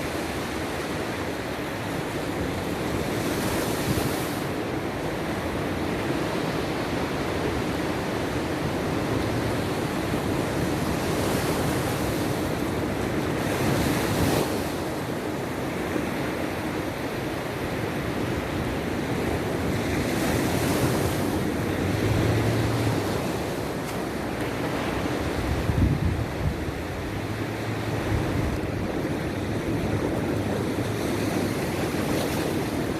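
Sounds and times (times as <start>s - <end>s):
sea waves breaking on shore: 0.0s - 32.9s
wind buffeting microphone: 17.8s - 32.9s.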